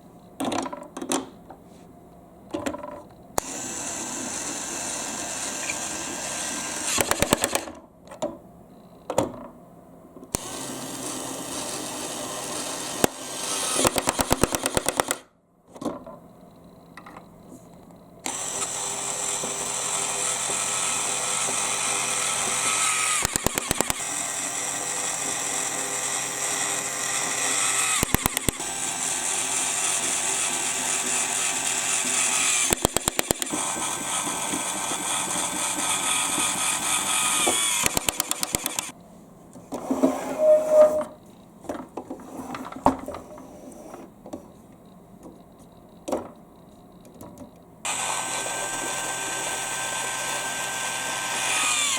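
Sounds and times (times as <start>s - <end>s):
electric drill running: 3.4s - 7.7s, 10.4s - 15.2s, 18.3s - 38.9s, 47.9s - 51.9s.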